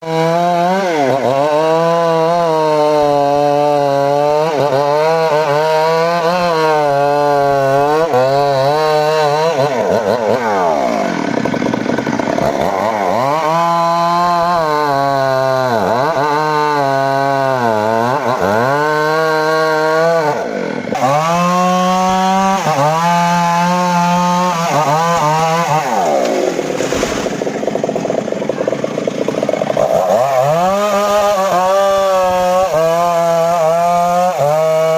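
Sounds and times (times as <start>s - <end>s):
table saw ripping wood: 4.2s - 14.6s, 19.8s - 34.9s.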